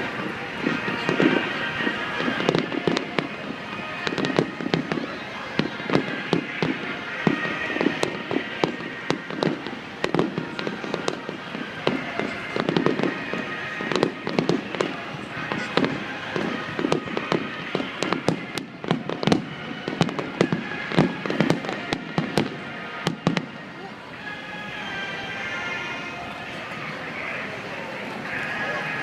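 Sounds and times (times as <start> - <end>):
fireworks bangs and crackles: 0.0 - 29.0.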